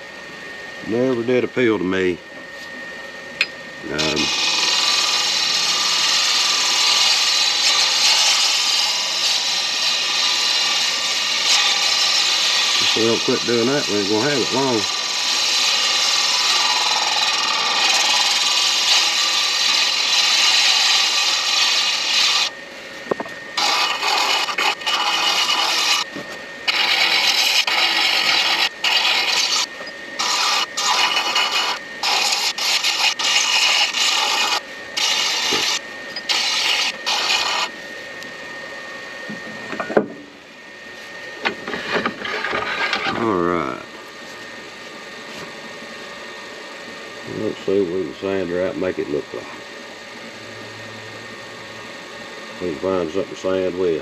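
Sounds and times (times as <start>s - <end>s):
lathe motor whine: 0.0s - 54.0s
turning tool scraping wood: 3.9s - 22.5s, 23.1s - 37.8s, 41.0s - 43.5s.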